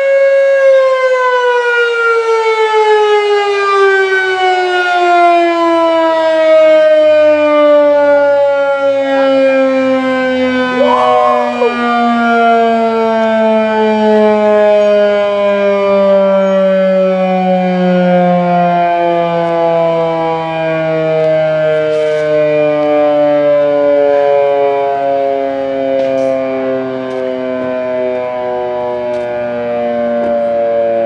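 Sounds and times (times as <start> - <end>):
warning siren wailing: 0.4 - 21.7.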